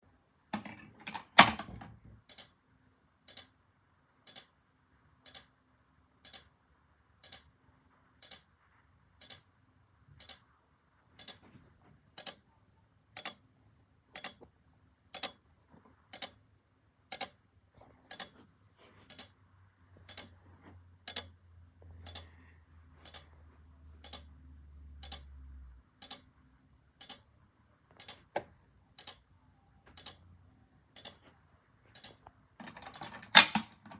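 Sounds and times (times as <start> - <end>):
mechanical clicking: 1.1 - 2.6, 3.3 - 3.6, 4.2 - 4.5, 5.2 - 5.5, 6.2 - 6.5, 7.2 - 7.5, 14.1 - 14.5, 15.1 - 15.4, 18.1 - 18.4, 20.1 - 20.4, 26.0 - 26.3, 27.0 - 27.3, 27.9 - 28.3, 29.0 - 29.2, 30.9 - 31.2, 31.9 - 33.9.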